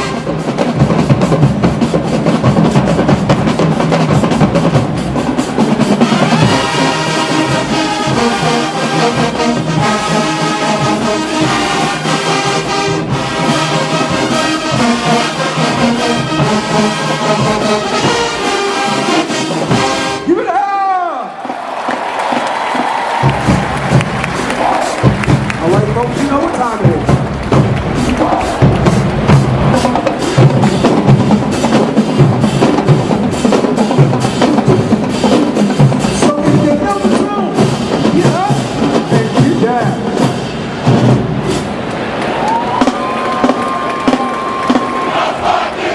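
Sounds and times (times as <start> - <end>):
steady drum beat: 0.0 - 20.2, 21.4 - 45.9
marching band playing: 0.0 - 45.9
bass drums pounding: 21.9 - 41.4.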